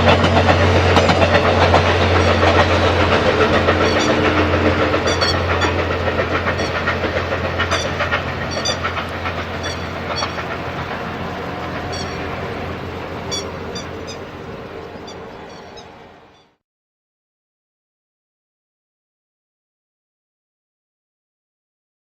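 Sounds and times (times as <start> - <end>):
train engine hum: 0.0 - 16.6
train wheels clicking over rail joints: 0.0 - 16.6.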